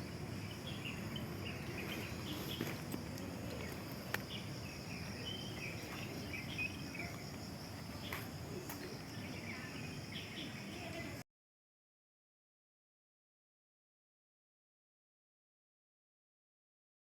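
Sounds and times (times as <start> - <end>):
bird chirps: 0.0 - 11.2
insects droning: 0.0 - 11.2.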